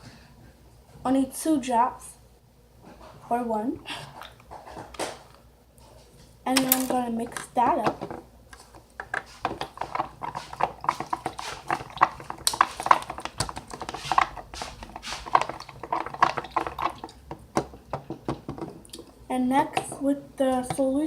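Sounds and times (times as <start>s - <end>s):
stick stirring in a cup: 7.2s - 21.0s.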